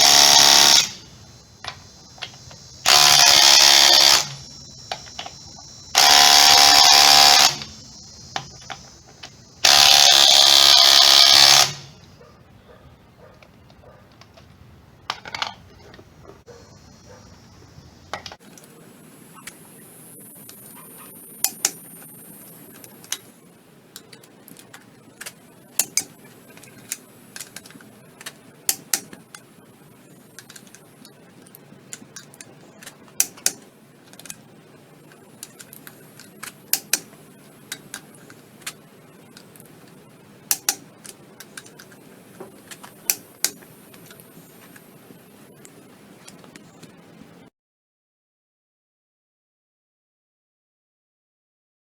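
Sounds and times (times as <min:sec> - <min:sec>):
sharp clicks and clinks: 0:24.0 - 0:29.5, 0:30.1 - 0:44.9.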